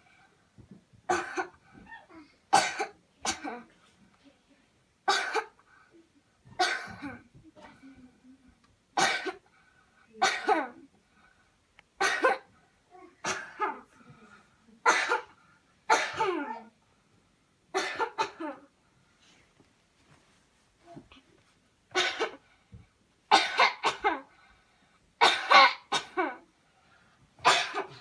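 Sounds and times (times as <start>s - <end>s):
person coughing hard: 1.1s - 1.6s, 2.5s - 3.7s, 5.1s - 5.6s, 6.6s - 7.2s, 9.0s - 9.4s, 10.2s - 10.8s, 12.0s - 12.5s, 13.2s - 13.9s, 14.8s - 16.6s, 17.8s - 18.6s, 22.0s - 22.4s, 23.3s - 24.3s, 25.2s - 26.4s, 27.4s - 28.0s.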